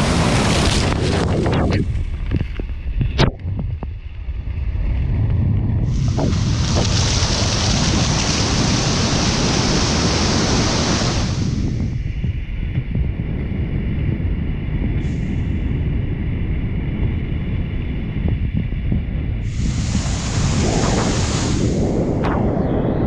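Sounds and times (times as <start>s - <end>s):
wind buffeting microphone: 0.0s - 23.0s
waterfall rushing: 5.9s - 11.6s, 19.5s - 21.8s
hiss of falling water: 5.9s - 11.9s, 19.4s - 22.2s.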